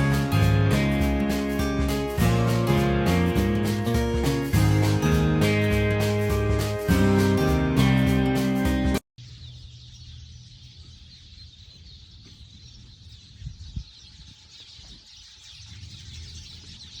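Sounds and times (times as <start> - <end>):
birds chirping: 0.0 - 17.0
wind rumble on microphone: 11.4 - 17.0.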